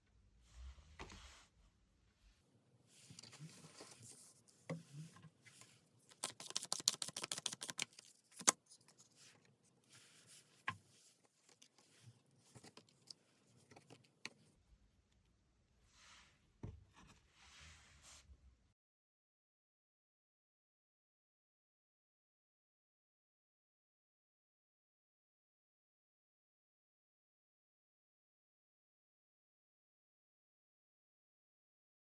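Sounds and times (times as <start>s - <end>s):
cards rustling: 6.1s - 9.1s.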